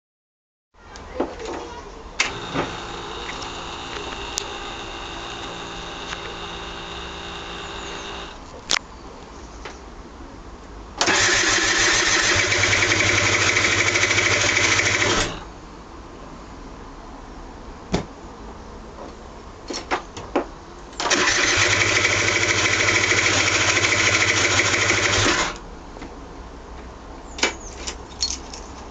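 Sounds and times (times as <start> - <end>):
moped engine cranking: 2.2 - 8.4, 11.0 - 15.5, 21.0 - 25.6
scooter electric whine: 2.2 - 8.4, 11.0 - 15.5, 21.0 - 25.6
starter clicks: 2.2 - 8.8
click: 3.2 - 4.5, 5.3 - 6.4.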